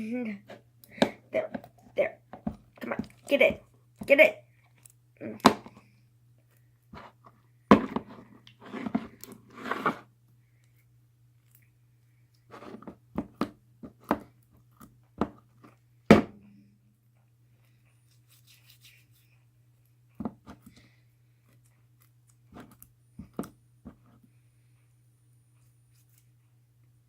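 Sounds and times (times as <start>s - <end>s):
low electrical hum: 0.0s - 27.0s.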